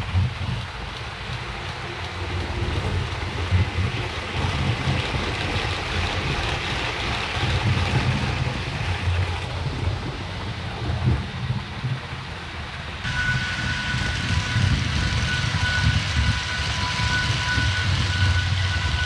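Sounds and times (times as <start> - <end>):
model train rumbling on track: 0.0 - 19.0
hiss: 10.6 - 19.0.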